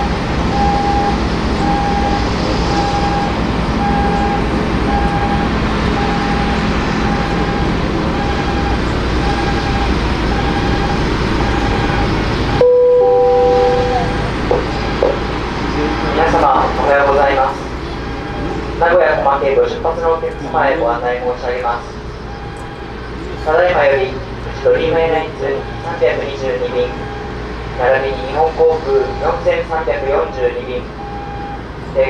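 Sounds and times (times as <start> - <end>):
short warning beeps: 0.0 - 14.4, 31.0 - 31.6
airliner engine roar: 0.0 - 32.0
two-tone chime: 12.6 - 14.3.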